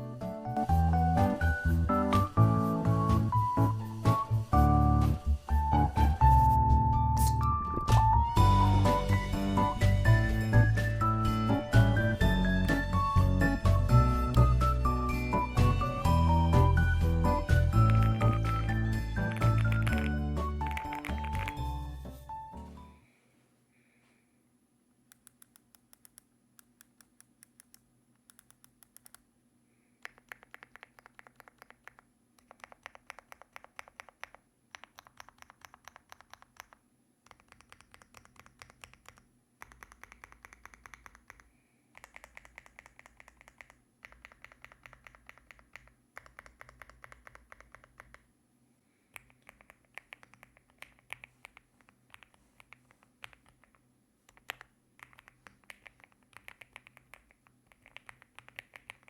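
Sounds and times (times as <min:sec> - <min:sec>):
mechanical keyboard typing: 0:17.3 - 0:21.7, 0:30.0 - 0:48.3, 0:49.2 - 0:59.0.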